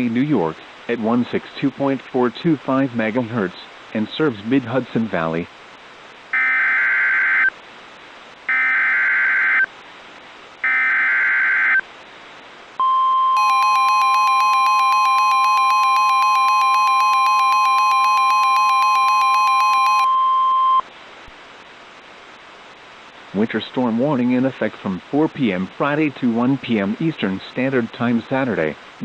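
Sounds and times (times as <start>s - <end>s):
steady warning alarm tone: 6.4s - 7.5s, 8.5s - 9.7s, 10.6s - 11.8s, 12.8s - 20.8s.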